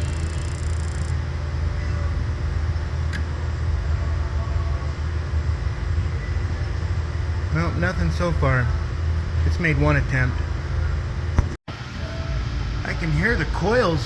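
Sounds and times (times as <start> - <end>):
water heater rumbling: 0.0 - 4.1.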